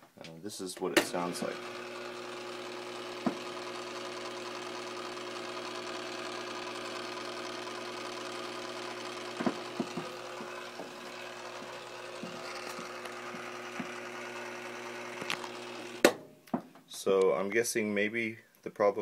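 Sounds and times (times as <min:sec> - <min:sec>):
washing machine motor hum: 0:01.0 - 0:16.1.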